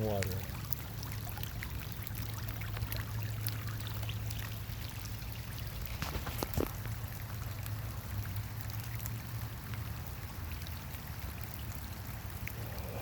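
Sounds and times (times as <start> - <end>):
water rushing with splashes: 0.0 - 13.0
steady low hum: 12.3 - 13.0.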